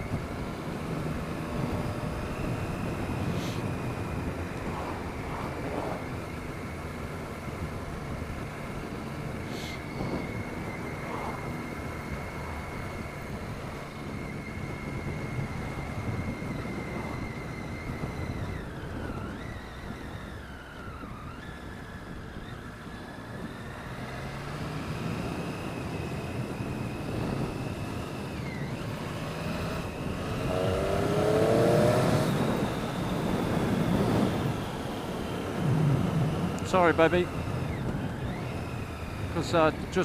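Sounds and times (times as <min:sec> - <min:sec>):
motorcycle engine revving: 0:00.0 - 0:18.8, 0:23.3 - 0:34.8
wind and road noise: 0:00.0 - 0:40.0.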